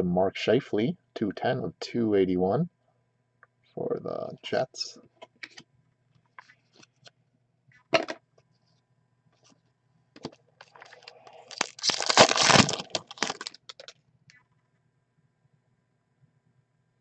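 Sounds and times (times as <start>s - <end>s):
packaging crinkling and tearing: 10.3s - 14.0s.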